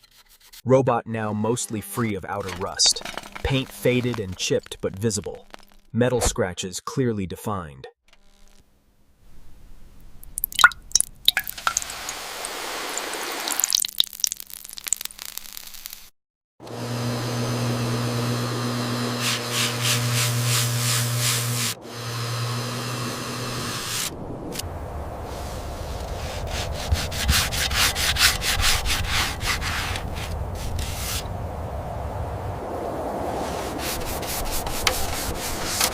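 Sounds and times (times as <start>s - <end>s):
abrasive scrubbing on metal: 1.4s - 4.8s, 18.6s - 24.2s, 25.8s - 31.3s, 33.5s - 35.9s
running water: 10.2s - 14.0s
water dripping: 10.2s - 15.2s.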